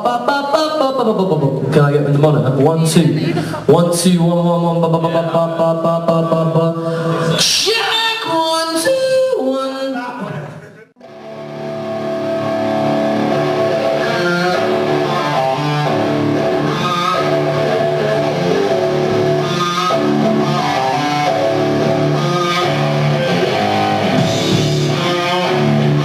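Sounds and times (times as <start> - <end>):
guitar music with held chords: 11.0 - 26.0.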